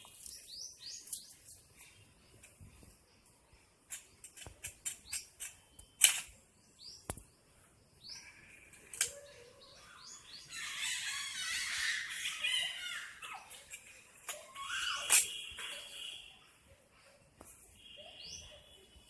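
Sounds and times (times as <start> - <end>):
small birds chirping: 0.0 - 19.0
sharp cracks: 3.9 - 7.3, 13.7 - 15.7.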